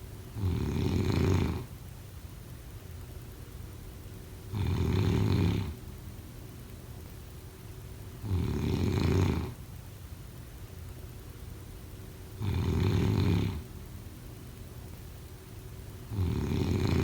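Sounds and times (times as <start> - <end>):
person snoring: 4.5 - 5.7, 12.4 - 13.6, 16.1 - 17.0.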